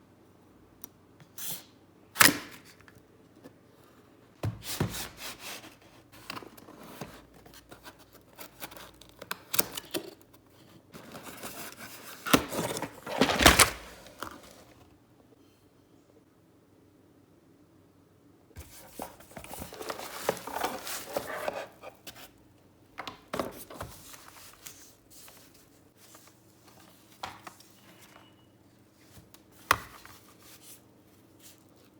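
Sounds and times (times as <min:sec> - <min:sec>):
packaging rustling: 0:11.0 - 0:14.9, 0:18.6 - 0:22.4.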